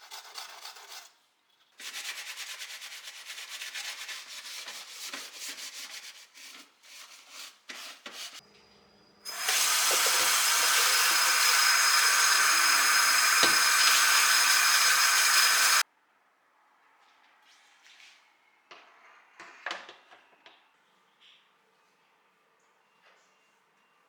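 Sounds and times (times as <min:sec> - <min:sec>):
loud rushing hiss: 0:09.3 - 0:15.8.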